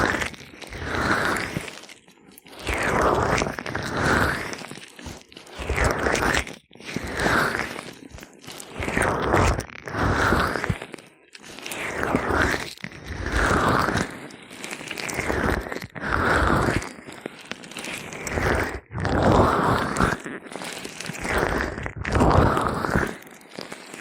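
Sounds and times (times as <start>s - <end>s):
gloved hands rubbing microphone: 2.5s - 10.8s, 14.9s - 24.0s.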